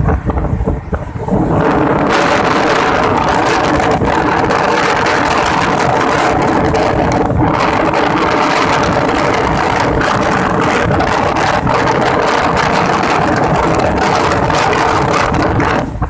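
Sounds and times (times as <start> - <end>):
vehicle engine roaring: 0.0 - 16.0.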